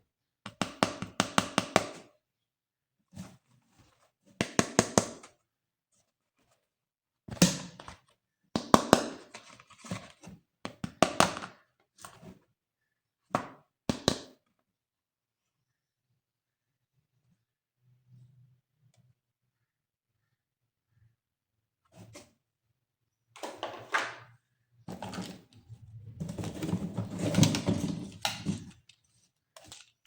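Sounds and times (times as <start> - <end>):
plastic toys knocking and clicking: 26.4 - 29.0.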